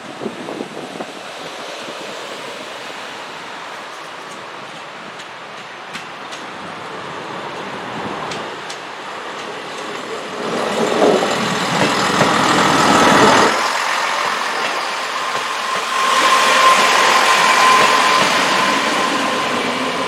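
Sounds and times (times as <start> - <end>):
train rumbling past: 0.0 - 20.0
steady high whine: 11.8 - 20.0.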